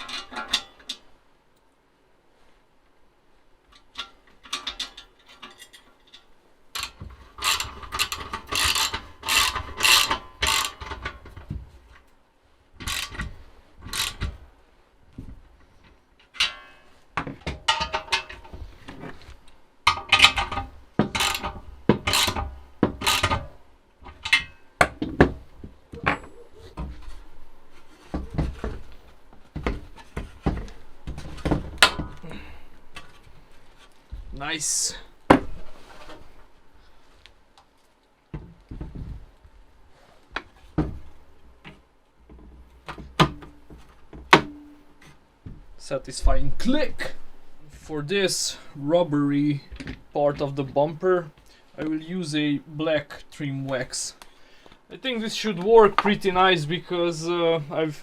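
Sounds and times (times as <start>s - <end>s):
tools and metal parts clicking: 0.0s - 1.0s, 3.7s - 11.4s, 12.8s - 14.3s, 17.6s - 18.6s, 19.9s - 24.6s.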